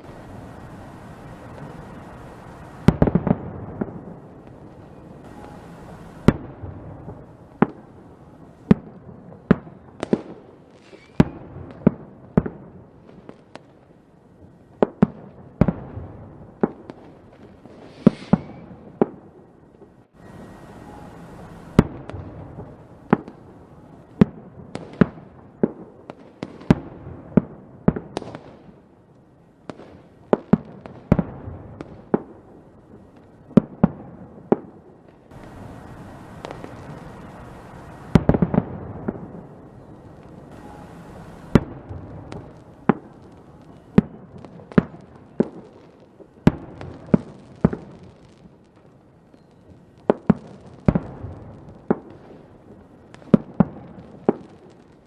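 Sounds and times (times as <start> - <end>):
fireworks sharp bangs: 0.0 - 13.9, 14.6 - 28.9, 29.6 - 55.0
distant fireworks rumble: 0.0 - 55.0.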